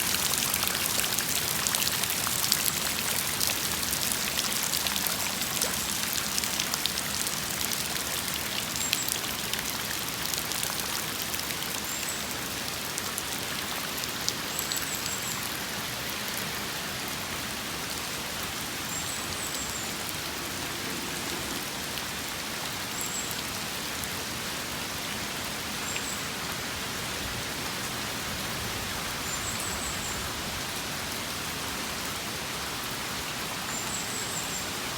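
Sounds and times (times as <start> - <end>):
raindrops clicking on a surface: 0.0 - 12.2
steady rain falling: 0.0 - 34.9.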